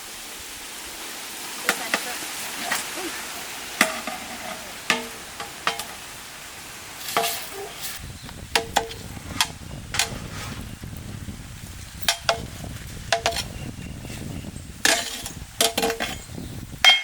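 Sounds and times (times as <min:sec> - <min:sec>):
steady sizzling hiss: 0:00.0 - 0:17.0
metal scoop clanking on pot: 0:03.8 - 0:06.0, 0:07.0 - 0:08.0, 0:13.1 - 0:13.5, 0:14.8 - 0:17.0.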